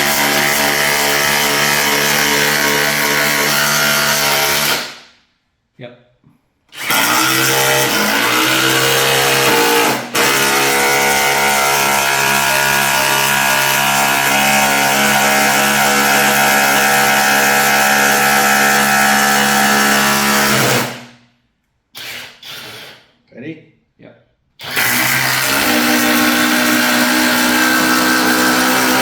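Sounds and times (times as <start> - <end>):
impact driver hammering: 6.8 - 21.0, 24.6 - 29.0.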